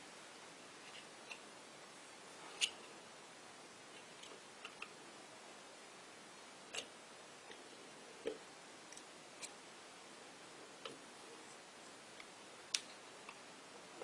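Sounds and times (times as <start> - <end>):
faint steady hiss: 0.0 - 14.0.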